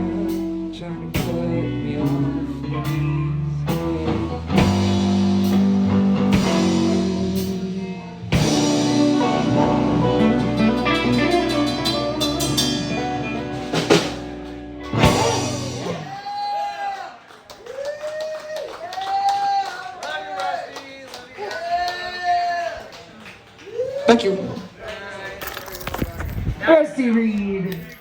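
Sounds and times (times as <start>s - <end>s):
drum kit: 0.0s - 16.2s
electric guitar: 0.0s - 16.2s.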